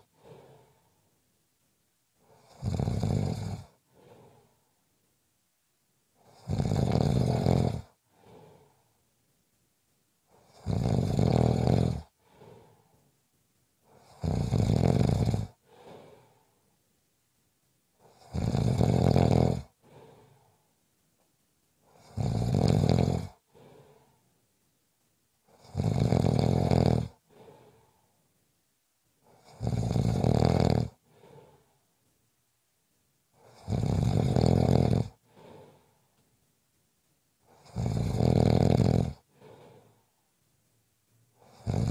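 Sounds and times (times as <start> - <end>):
faint breath out: 0.0 - 1.2, 3.8 - 4.8, 8.0 - 9.0, 12.1 - 13.1, 15.5 - 16.8, 19.8 - 20.8, 23.4 - 24.4, 27.2 - 28.3, 31.0 - 31.9, 35.2 - 36.2, 39.2 - 40.3
person snoring: 2.2 - 4.5, 6.2 - 8.8, 10.3 - 12.8, 13.9 - 16.5, 18.0 - 20.5, 21.9 - 24.2, 25.5 - 28.0, 29.3 - 31.8, 33.4 - 36.0, 37.5 - 40.0, 41.4 - 41.9.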